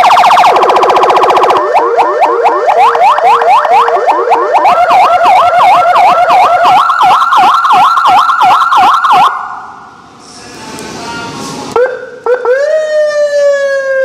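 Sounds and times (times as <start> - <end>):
electronic siren: 0.0 - 9.8.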